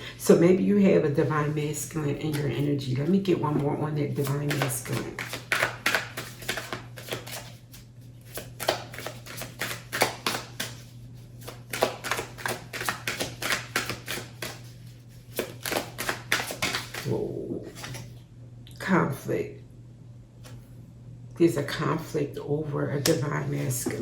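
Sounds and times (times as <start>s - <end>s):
cards being shuffled: 3.5s - 17.1s, 17.7s - 18.2s.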